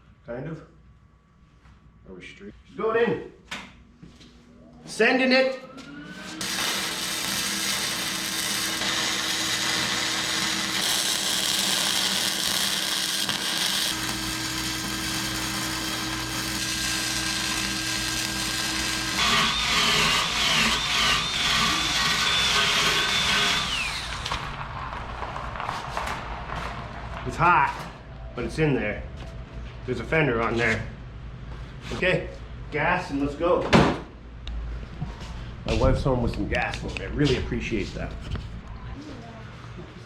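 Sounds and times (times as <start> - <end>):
wavering high whine: 4.5 - 30.4
power tool running: 5.7 - 24.6.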